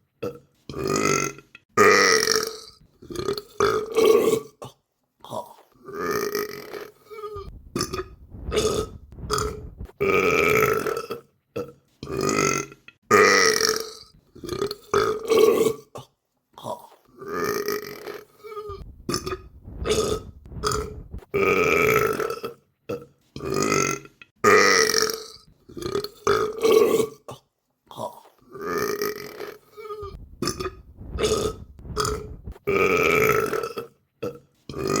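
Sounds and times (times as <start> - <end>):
person burping: 5.3 - 15.9, 16.6 - 27.2, 27.9 - 35.0.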